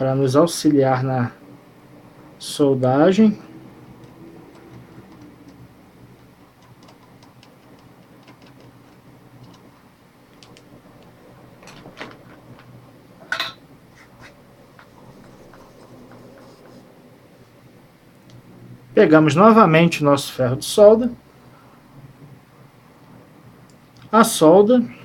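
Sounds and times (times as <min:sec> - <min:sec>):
small tools clicking on workbench: 0:03.9 - 0:05.6.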